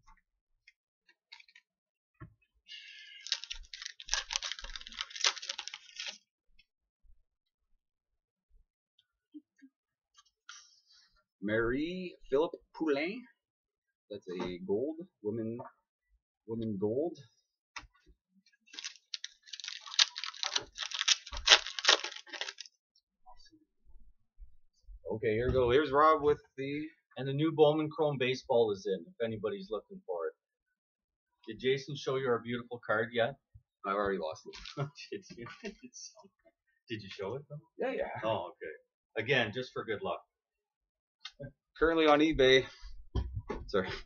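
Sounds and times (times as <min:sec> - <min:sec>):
card wrapper crinkling and rustling: 0:03.0 - 0:06.2, 0:18.7 - 0:22.7, 0:34.5 - 0:34.8.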